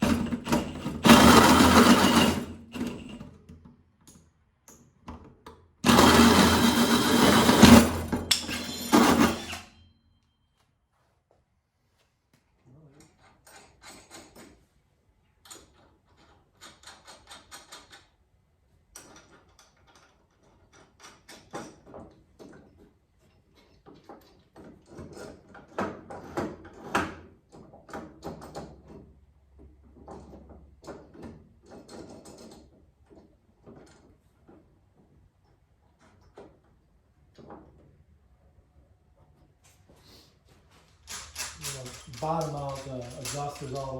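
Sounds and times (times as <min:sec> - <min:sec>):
rapid mechanical clicking: 0:41.0 - 0:43.9.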